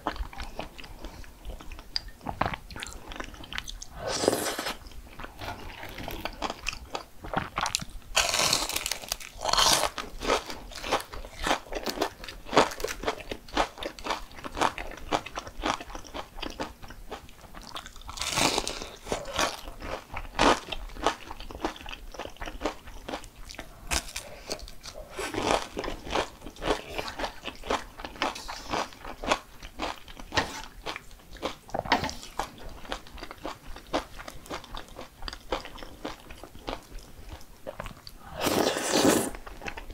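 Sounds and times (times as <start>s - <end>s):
crunching bites and chewing: 1.7s - 16.7s, 17.6s - 39.9s.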